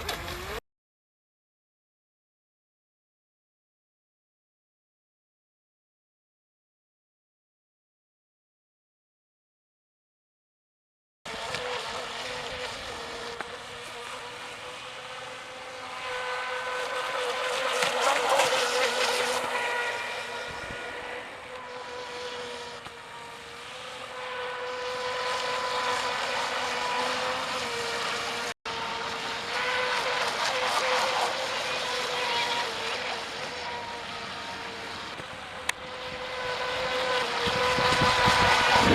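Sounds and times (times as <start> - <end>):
electric motor high whine: 0.0 - 0.6, 11.3 - 38.9.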